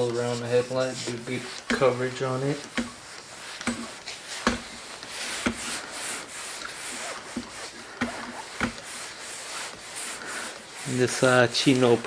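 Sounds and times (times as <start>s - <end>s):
hand scrubbing swish: 0.0s - 12.0s.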